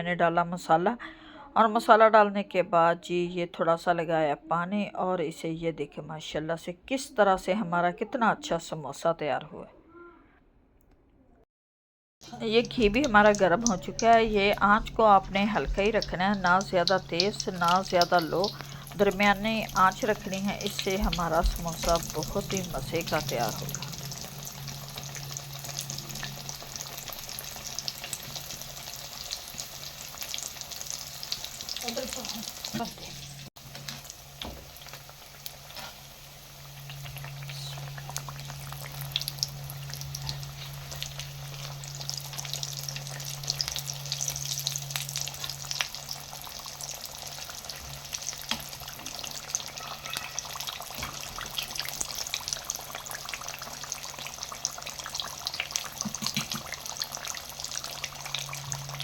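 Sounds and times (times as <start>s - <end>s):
crackles and pops of frying: 12.2s - 59.0s
food deep-frying in oil: 12.2s - 59.0s
steady low hum: 12.3s - 29.0s.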